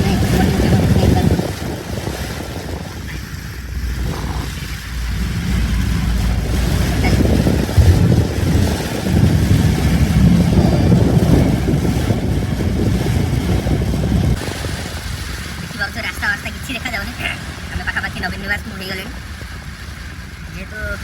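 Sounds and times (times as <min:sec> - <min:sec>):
heavy rain: 0:00.0 - 0:21.0
vehicle splashing through water: 0:00.0 - 0:21.0
vehicle engine: 0:03.2 - 0:14.4.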